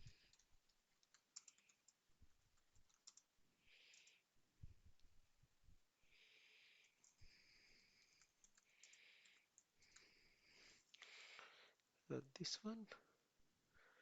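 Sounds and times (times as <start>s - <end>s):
keyboard and mouse clicks: 0.0s - 3.3s, 8.0s - 10.1s.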